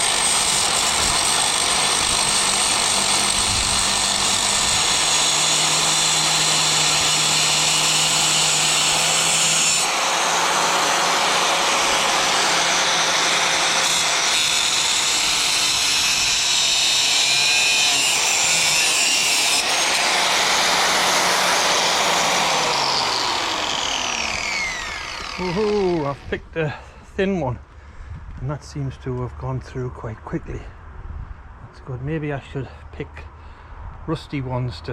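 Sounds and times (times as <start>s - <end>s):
angle grinder cutting metal: 0.0s - 26.4s
grinder spinning down: 0.0s - 26.4s.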